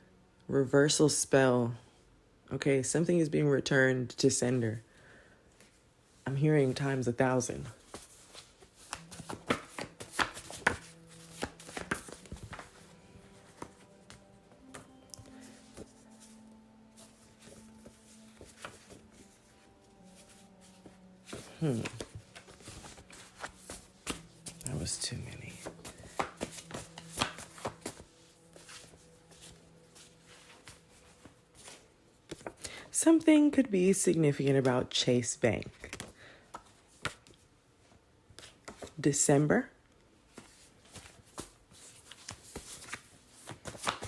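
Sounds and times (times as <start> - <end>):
cards being shuffled: 6.7 - 32.6, 35.7 - 37.4, 40.3 - 44.0.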